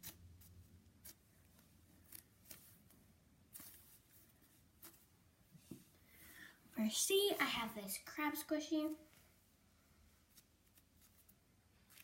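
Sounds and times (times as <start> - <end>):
hands handling foam toy: 0.0 - 6.0, 10.2 - 12.0.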